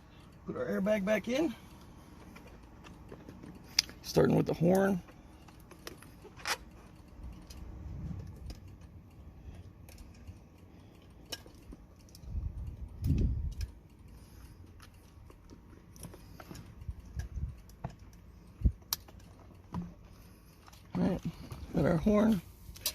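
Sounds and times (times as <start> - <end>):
small clicks of handled parts: 1.3 - 22.9.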